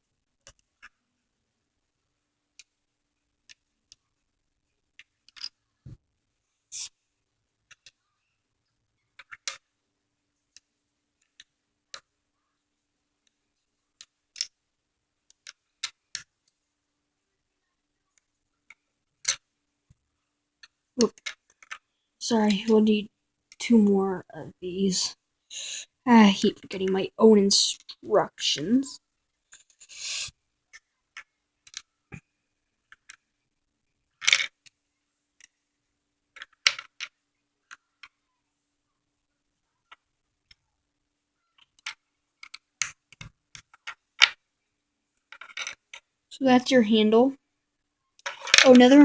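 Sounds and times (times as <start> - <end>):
plastic bricks clicking together: 5.0 - 5.6, 7.7 - 8.0, 9.2 - 9.7, 14.0 - 14.6, 18.7 - 19.5, 20.6 - 21.9, 30.7 - 31.9, 32.8 - 33.3, 34.2 - 34.7, 36.4 - 38.2, 41.6 - 44.4, 45.2 - 46.1, 48.2 - 49.0
plastic bricks rattling clatter: 48.2 - 48.9.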